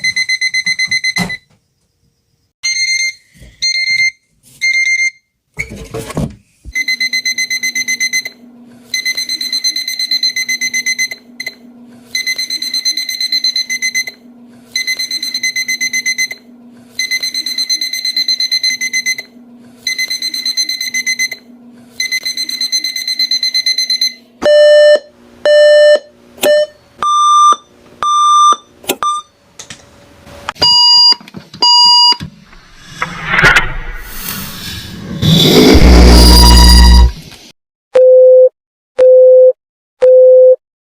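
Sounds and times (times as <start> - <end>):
alarm clocks beeping in pairs: 22.0 - 29.3, 30.6 - 32.2
electronic alarm clock buzzing: 30.6 - 32.2
low hum: 32.2 - 37.3.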